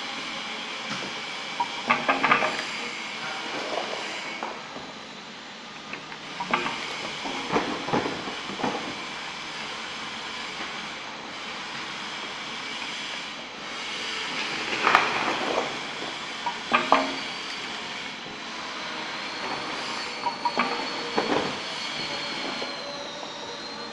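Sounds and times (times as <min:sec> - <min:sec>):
bottle filling machine running: 0:00.0 - 0:23.9
thin high whine: 0:00.0 - 0:23.9
irregular mechanical clicks and clatters: 0:01.6 - 0:02.7, 0:05.9 - 0:08.8.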